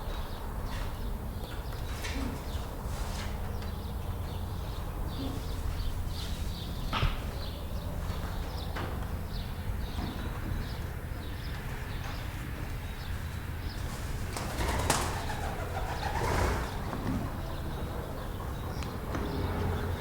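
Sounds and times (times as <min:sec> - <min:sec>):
chickens clucking: 0:14.2 - 0:19.8.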